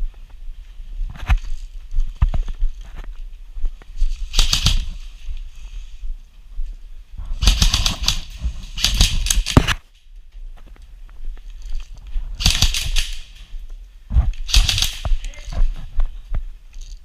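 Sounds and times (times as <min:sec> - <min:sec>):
airsoft rifle bursts: 0:07.4 - 0:09.7, 0:14.4 - 0:15.5.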